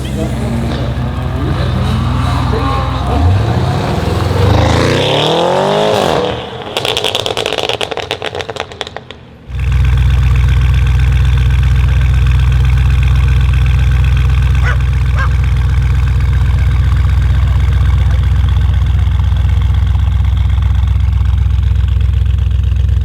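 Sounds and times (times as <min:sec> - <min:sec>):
car engine revving: 0:00.0 - 0:23.0
exhaust crackles and pops: 0:06.7 - 0:23.0.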